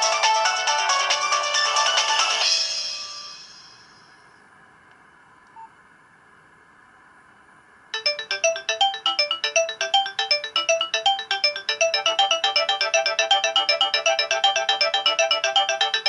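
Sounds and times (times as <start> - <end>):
polyphonic phone ringtone: 8.0 - 16.0.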